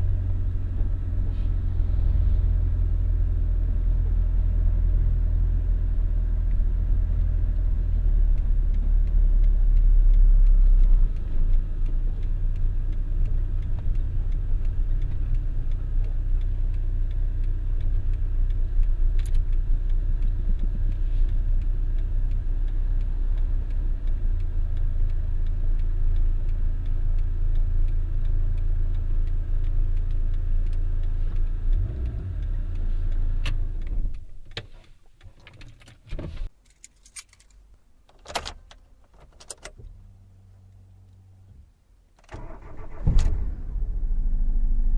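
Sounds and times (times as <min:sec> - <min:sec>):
car engine and road rumble: 0:00.0 - 0:44.9
sharp clicks: 0:08.3 - 0:36.0.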